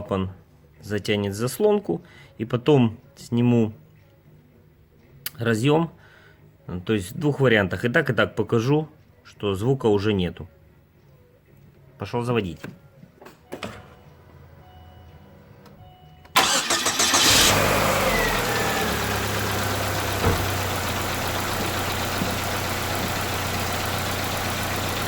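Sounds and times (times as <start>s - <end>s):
car engine cranking and starting: 16.4s - 25.0s
car engine idling: 16.4s - 25.0s.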